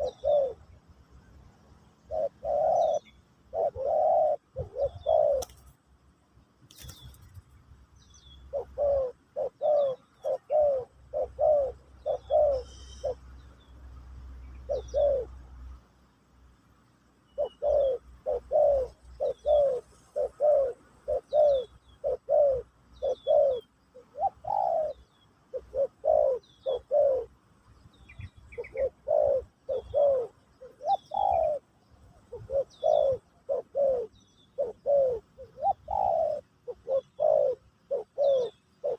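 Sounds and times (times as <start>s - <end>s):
dove cooing: 0.0s - 0.8s, 1.9s - 5.8s, 8.4s - 15.8s, 17.4s - 38.9s
small birds chirping faintly: 0.0s - 38.9s.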